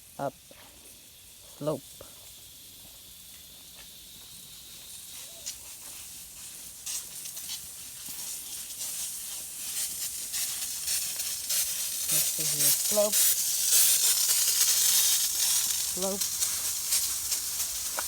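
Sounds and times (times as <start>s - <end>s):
sprinklers spraying water: 0.0s - 18.0s
water ticks and spatters: 5.0s - 18.0s.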